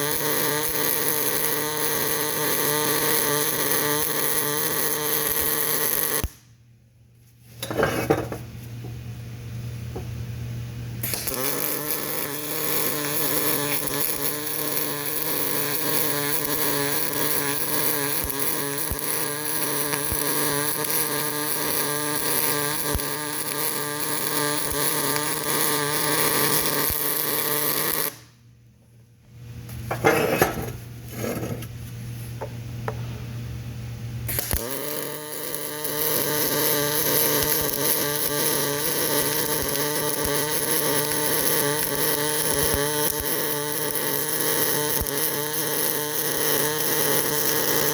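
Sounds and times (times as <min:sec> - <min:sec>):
electric arc welding: 0:00.0 - 0:06.5, 0:11.0 - 0:28.3, 0:34.2 - 0:47.9.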